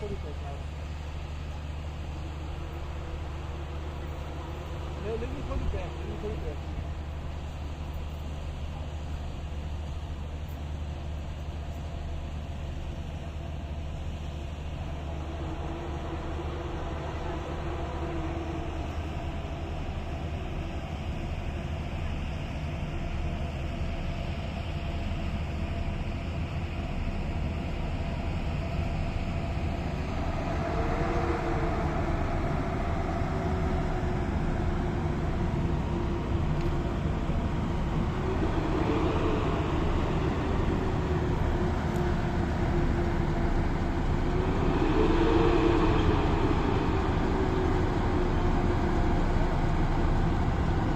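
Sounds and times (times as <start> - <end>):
train rumble with motor whine: 0.0 - 50.9.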